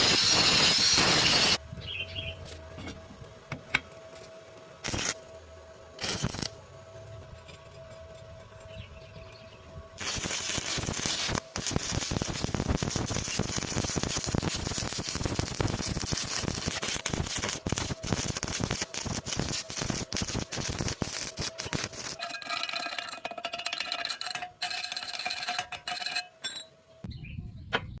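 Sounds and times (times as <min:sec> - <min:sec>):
arc welding crackling: 0:00.0 - 0:01.6, 0:04.8 - 0:05.3, 0:06.0 - 0:06.6, 0:10.0 - 0:22.9.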